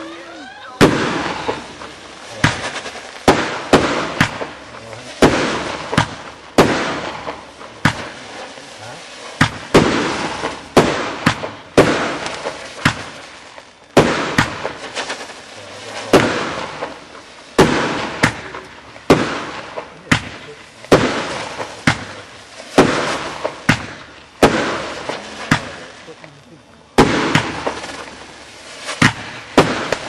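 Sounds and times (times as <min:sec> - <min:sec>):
firework bangs: 0:00.0 - 0:30.0
firework hiss: 0:00.0 - 0:30.0.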